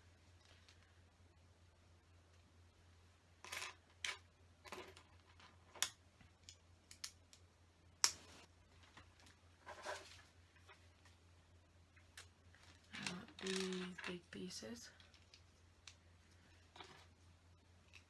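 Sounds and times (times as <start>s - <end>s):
plastic bricks clicking: 12.9s - 14.2s.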